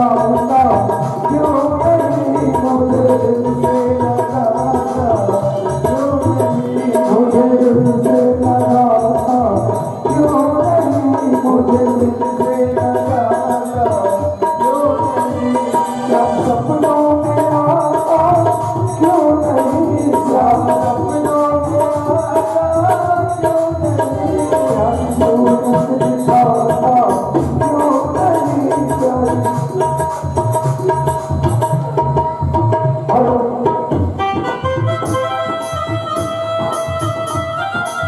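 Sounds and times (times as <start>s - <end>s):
tabla rhythm: 0.0s - 38.0s
melody instrument playing: 34.3s - 38.0s.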